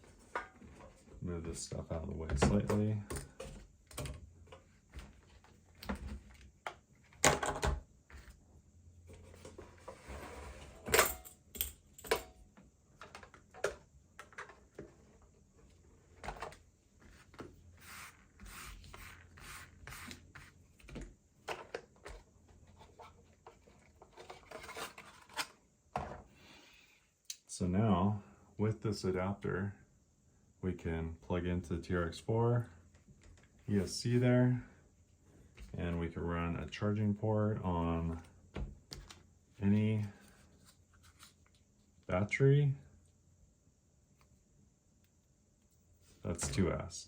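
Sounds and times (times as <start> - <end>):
tools handled on workbench: 0.0 - 1.2.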